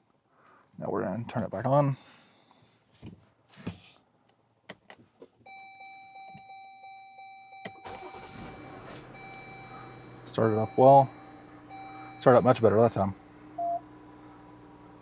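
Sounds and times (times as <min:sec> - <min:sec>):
ignition clicks: 0:06.2 - 0:15.0
car engine cranking and idling: 0:07.5 - 0:15.0.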